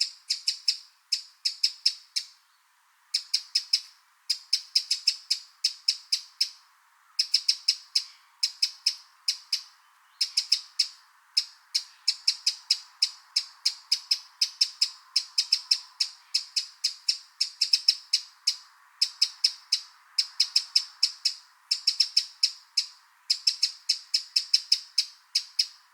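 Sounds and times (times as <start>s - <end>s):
wren calling: 0.0s - 6.6s, 7.2s - 25.9s.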